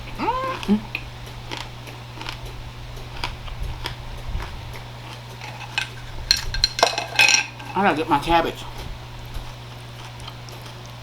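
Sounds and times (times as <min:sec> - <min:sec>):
chewing and mouth clicks: 0:00.0 - 0:11.0
low fan hum: 0:00.0 - 0:11.0
cutlery clinking against dish: 0:05.3 - 0:07.8.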